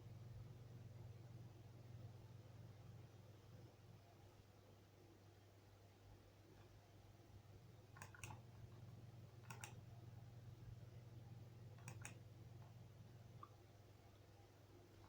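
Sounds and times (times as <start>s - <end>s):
low steady hum: 0.0s - 15.0s
computer mouse clicks: 6.5s - 6.8s, 7.9s - 9.9s, 11.7s - 13.6s.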